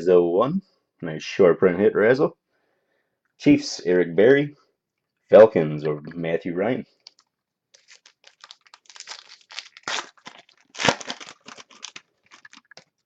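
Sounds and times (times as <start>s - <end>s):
foil wrapper tearing and crinkling: 7.8s - 13.0s.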